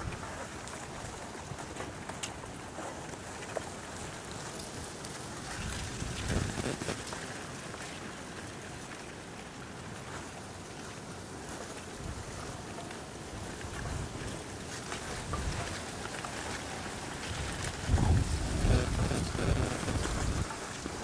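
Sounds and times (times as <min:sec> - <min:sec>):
wind buffeting microphone: 0:05.6 - 0:07.0, 0:17.4 - 0:20.6.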